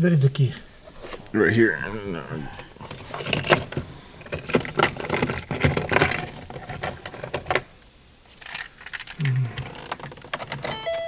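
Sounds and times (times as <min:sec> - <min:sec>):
car keys jangling: 0:02.3 - 0:10.9.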